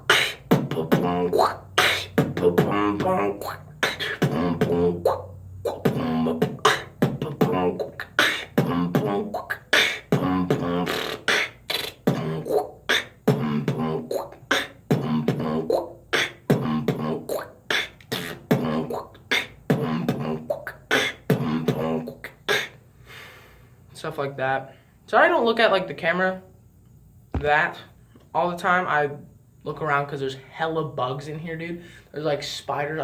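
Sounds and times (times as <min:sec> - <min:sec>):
beatboxing: 0:00.0 - 0:22.9.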